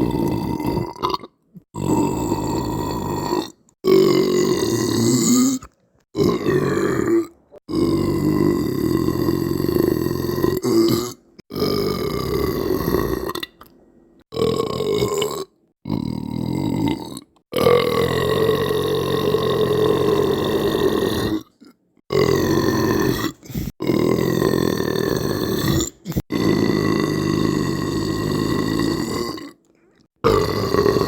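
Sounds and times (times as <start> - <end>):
long human belches: 0.0 - 31.0.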